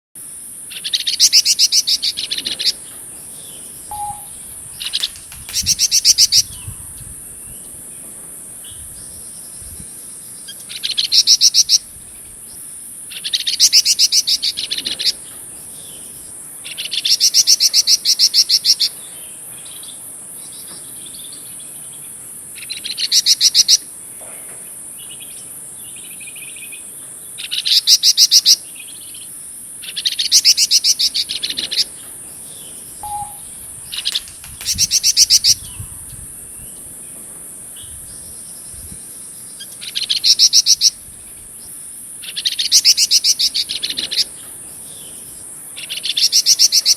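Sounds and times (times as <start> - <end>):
high insect drone: 0.2 - 46.9
songbird trilling and warbling: 0.7 - 7.8, 10.3 - 16.0, 29.8 - 36.9, 39.4 - 41.0, 41.6 - 45.2.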